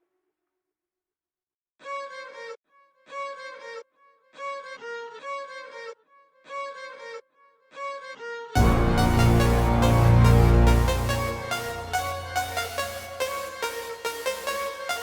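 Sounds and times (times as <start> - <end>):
dense electronic music track: 8.6 - 15.0
string-like melodic phrase: 8.6 - 15.0.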